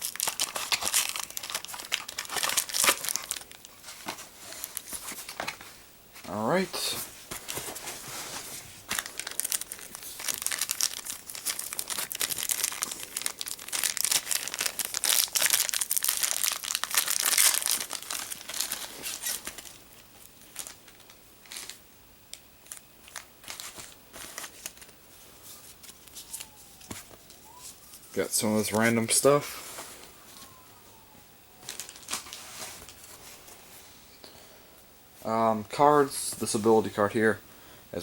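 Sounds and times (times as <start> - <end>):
packaging crinkling: 0.0 - 5.5, 7.3 - 25.0, 31.6 - 33.6.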